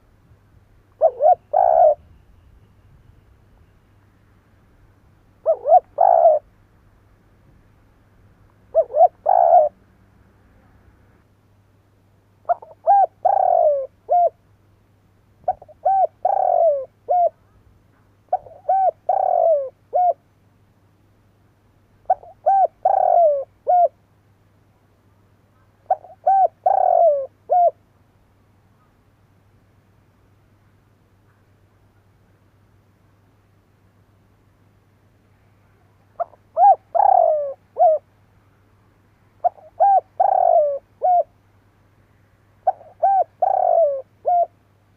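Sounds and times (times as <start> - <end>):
dove cooing: 1.0 - 2.1, 5.4 - 6.5, 8.7 - 9.9, 12.4 - 14.4, 15.4 - 17.6, 18.3 - 20.2, 22.1 - 24.0, 25.6 - 27.8, 36.2 - 38.1, 39.4 - 41.4, 42.6 - 44.6.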